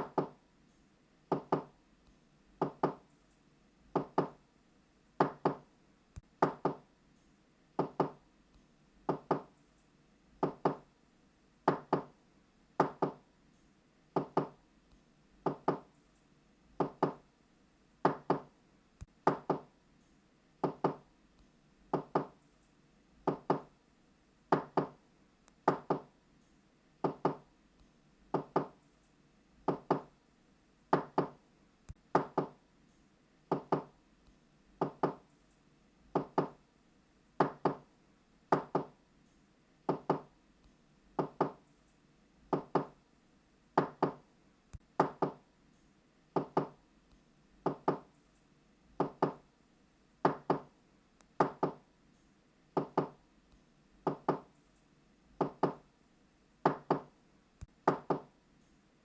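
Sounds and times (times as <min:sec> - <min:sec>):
knocking on a door: 0:01.3 - 0:01.7, 0:02.6 - 0:03.0, 0:04.0 - 0:04.4, 0:05.2 - 0:05.6, 0:06.4 - 0:06.8, 0:07.8 - 0:08.2, 0:09.1 - 0:09.5, 0:10.4 - 0:10.9, 0:11.7 - 0:12.1, 0:12.8 - 0:13.2, 0:14.2 - 0:14.6, 0:15.4 - 0:15.9, 0:16.8 - 0:17.2, 0:18.0 - 0:18.5, 0:19.2 - 0:19.7, 0:20.6 - 0:21.0, 0:21.9 - 0:22.3, 0:23.3 - 0:23.7, 0:24.5 - 0:25.0, 0:25.7 - 0:26.1, 0:27.0 - 0:27.4, 0:28.3 - 0:28.7, 0:29.7 - 0:30.1, 0:30.9 - 0:31.4, 0:32.1 - 0:32.6, 0:33.5 - 0:33.9, 0:34.8 - 0:35.2, 0:36.2 - 0:36.6, 0:37.4 - 0:37.8, 0:38.5 - 0:38.9, 0:39.9 - 0:40.3, 0:41.2 - 0:41.6, 0:42.5 - 0:42.9, 0:43.8 - 0:44.2, 0:45.0 - 0:45.4, 0:46.4 - 0:46.8, 0:47.6 - 0:48.1, 0:49.0 - 0:49.4, 0:50.2 - 0:50.7, 0:51.4 - 0:51.8, 0:52.8 - 0:53.2, 0:54.1 - 0:54.5, 0:55.4 - 0:55.8, 0:56.6 - 0:57.1, 0:57.9 - 0:58.3.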